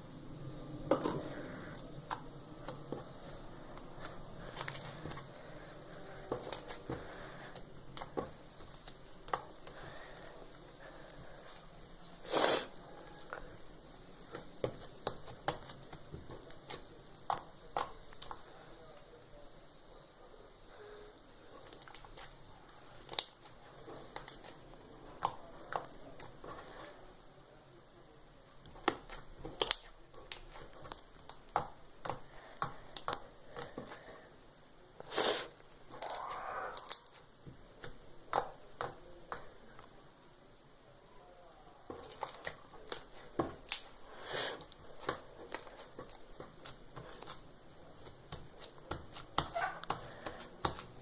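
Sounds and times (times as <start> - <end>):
slime squelching: 28.7 - 34.3, 35.0 - 39.5, 41.9 - 51.0.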